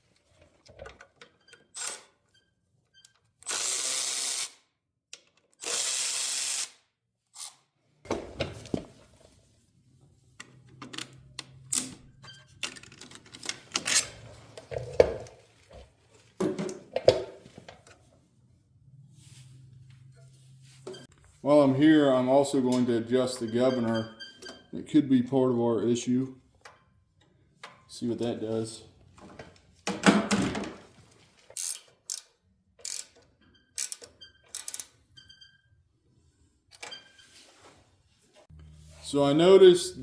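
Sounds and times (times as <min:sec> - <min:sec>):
power tool loosening fasteners: 0:01.7 - 0:02.1, 0:31.6 - 0:33.2, 0:33.8 - 0:34.9
clinks of tools and metal parts: 0:10.4 - 0:18.1, 0:31.4 - 0:35.0.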